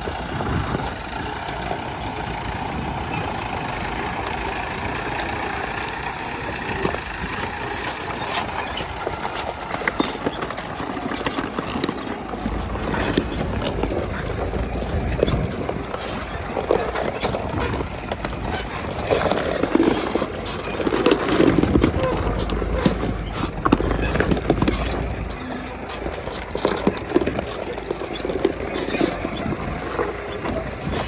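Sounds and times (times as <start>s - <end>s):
heavy machinery engine running: 0.0s - 31.0s
low rumble: 12.2s - 27.5s.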